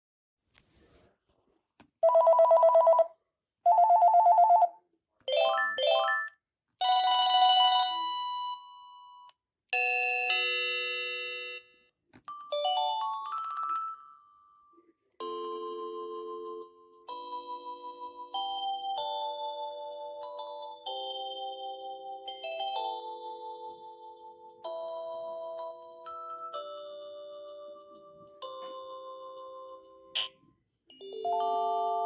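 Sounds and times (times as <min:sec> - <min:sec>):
warbling electronic phone rings: 0:02.0 - 0:03.1, 0:03.7 - 0:04.7.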